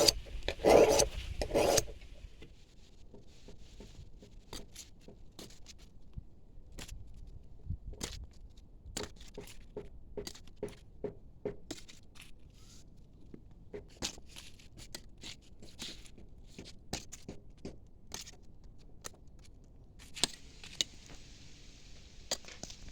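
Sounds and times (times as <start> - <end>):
knife blade scraping: 0.0 - 2.2.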